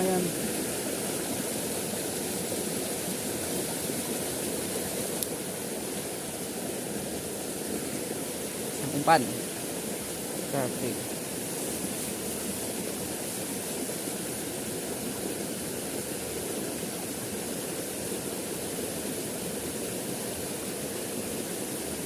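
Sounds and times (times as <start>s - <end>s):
river water flowing: 0.0s - 22.0s.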